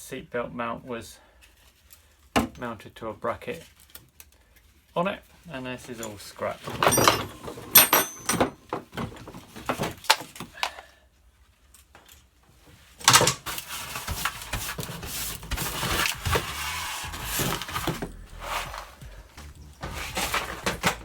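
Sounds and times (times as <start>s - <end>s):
scraping and rustling: 5.7s - 10.0s, 12.5s - 21.0s
knocks and clatters: 6.6s - 10.3s, 13.1s - 21.0s.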